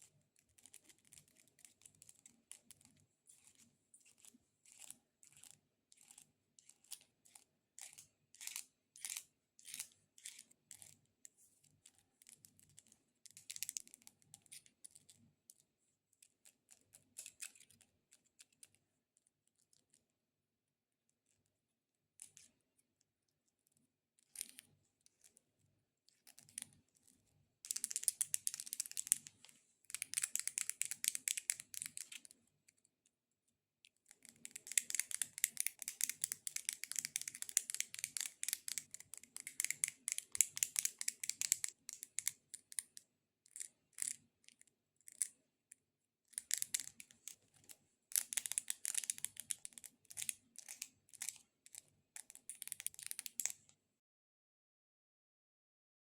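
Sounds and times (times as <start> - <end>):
false fingernails clicking together: 48.1 - 51.4.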